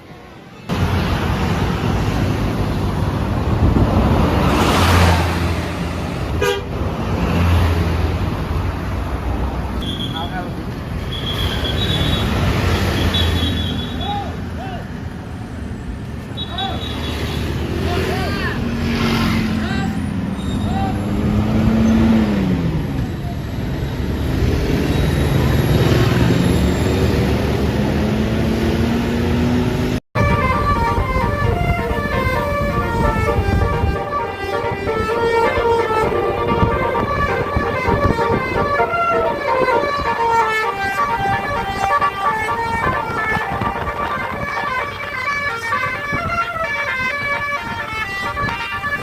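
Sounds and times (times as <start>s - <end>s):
multi-tone horn tune: 6.4s - 6.7s, 30.2s - 49.0s
bus engine running: 19.6s - 49.0s.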